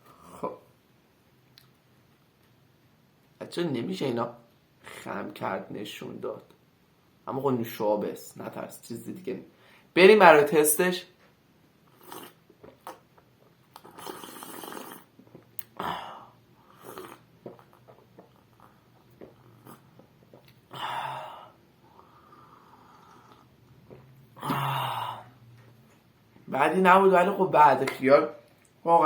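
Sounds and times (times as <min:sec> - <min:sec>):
breaths: 0:09.5 - 0:10.0, 0:20.7 - 0:23.6, 0:24.4 - 0:25.7
sipping fizzy drink: 0:11.9 - 0:13.1, 0:13.7 - 0:15.8, 0:16.6 - 0:21.3.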